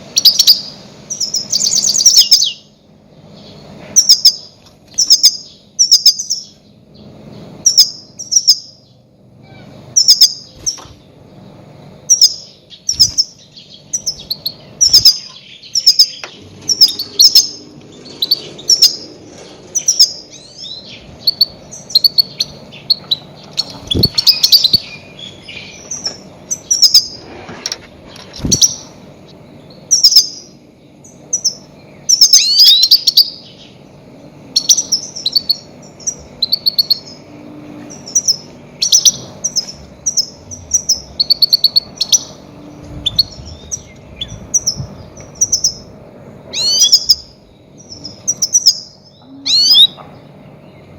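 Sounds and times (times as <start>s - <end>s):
faint low hum: 0.0s - 50.9s
goldfinch chirping and twittering: 0.2s - 2.7s, 3.4s - 6.6s, 7.6s - 8.9s, 9.9s - 10.9s, 12.1s - 27.2s, 28.1s - 29.0s, 29.6s - 33.8s, 34.5s - 37.2s, 37.8s - 45.9s, 46.5s - 50.0s.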